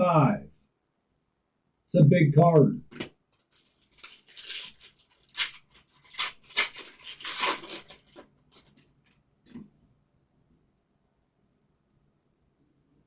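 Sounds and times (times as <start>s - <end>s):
cards rustling and sliding: 2.9s - 9.6s.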